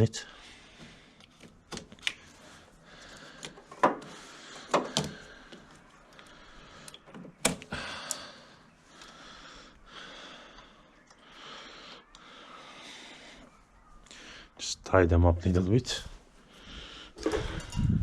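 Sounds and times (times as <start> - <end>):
tools clicking and knocking: 3.1 - 5.3.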